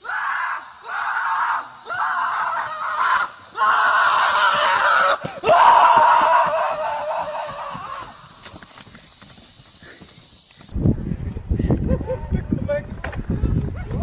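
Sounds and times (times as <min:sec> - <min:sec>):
person screaming: 0:00.0 - 0:08.2.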